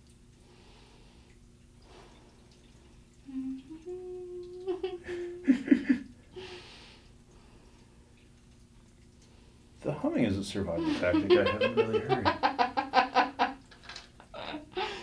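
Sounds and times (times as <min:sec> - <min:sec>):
woman humming: 0:03.2 - 0:06.1.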